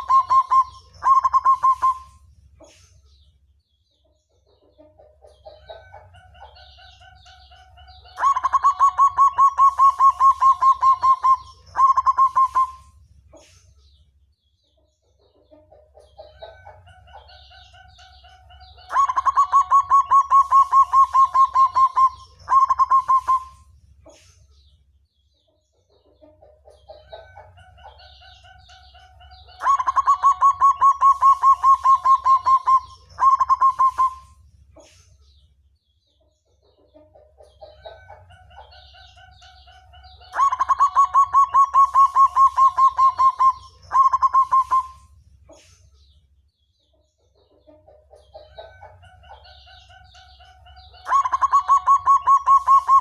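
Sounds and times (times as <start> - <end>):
dove cooing: 0.0 - 2.2, 6.8 - 12.9, 18.8 - 23.6, 28.5 - 34.4, 37.9 - 45.1, 49.9 - 53.0.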